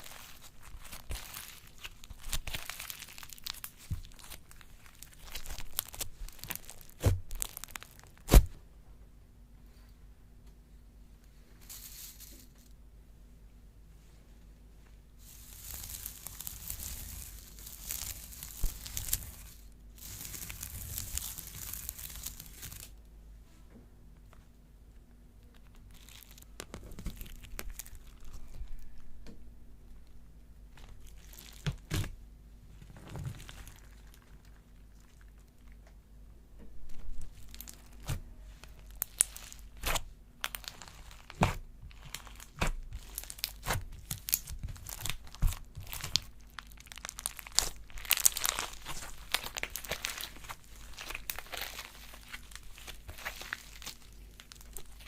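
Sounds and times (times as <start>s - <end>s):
slime crinkling and crackling: 0.0s - 8.6s, 15.2s - 23.0s, 25.4s - 29.0s, 30.7s - 35.8s, 36.9s - 55.0s
slime popping and snapping: 38.8s - 55.0s.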